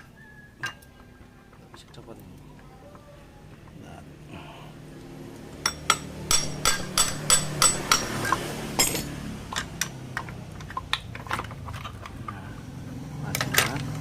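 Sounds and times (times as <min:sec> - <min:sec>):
metallic tapping of hand tools: 0:05.6 - 0:12.4.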